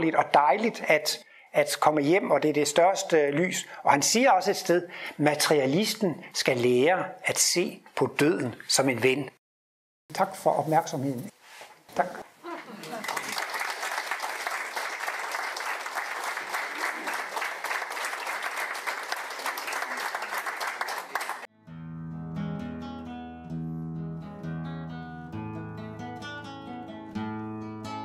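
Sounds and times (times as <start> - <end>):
audience applauding: 12.6 - 21.5
plucked guitar music: 21.6 - 28.0.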